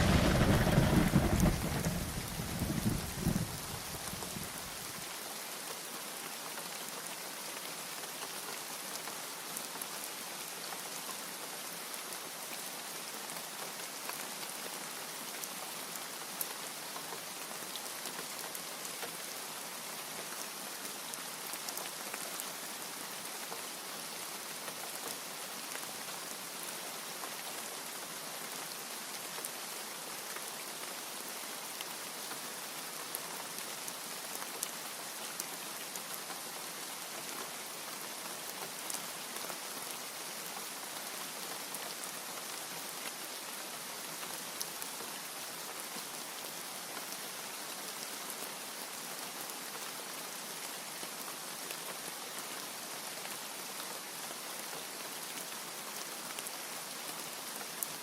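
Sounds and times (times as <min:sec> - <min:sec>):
raindrop ticks: 0:00.0 - 0:04.2
steady rain falling: 0:00.0 - 0:58.0.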